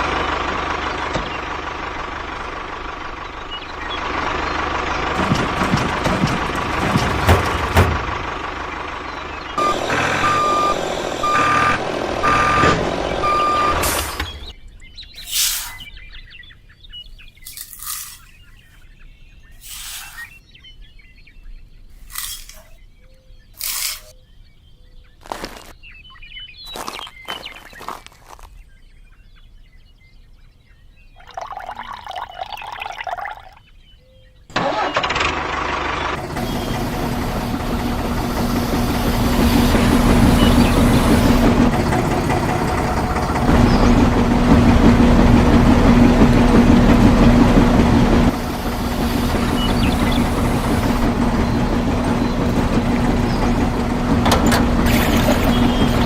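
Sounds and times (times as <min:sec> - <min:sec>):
engine running: 0:00.0 - 0:15.9, 0:17.4 - 0:18.4, 0:19.6 - 0:20.4, 0:34.5 - 0:56.0.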